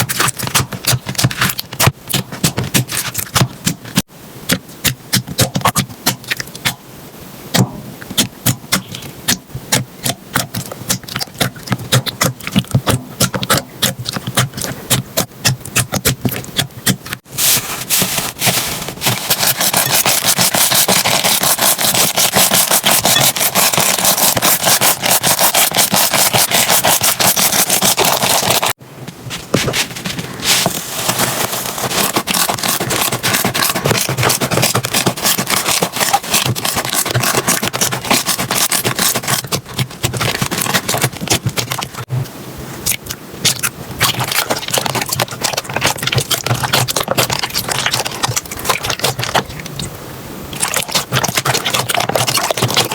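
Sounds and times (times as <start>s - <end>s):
slime crackling and popping: 30.5s - 42.1s, 42.9s - 49.4s, 50.6s - 52.9s.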